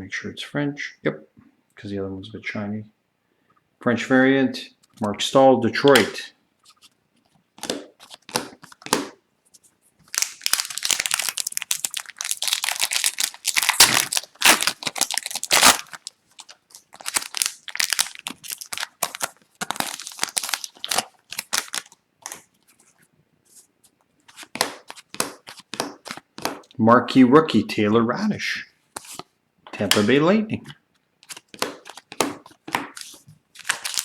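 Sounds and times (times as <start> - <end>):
wrapper crinkling and tearing: 10.1 - 22.5, 32.9 - 34.0.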